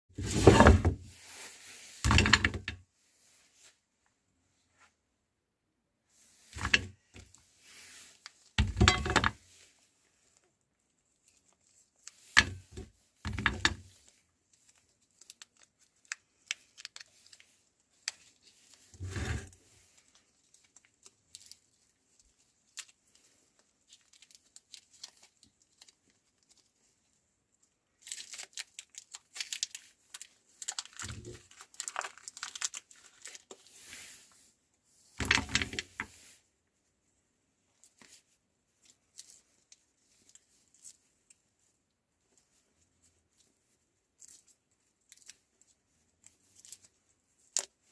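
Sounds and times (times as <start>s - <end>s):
plastic wrappers crinkling: 13.7s - 34.4s, 37.7s - 47.9s.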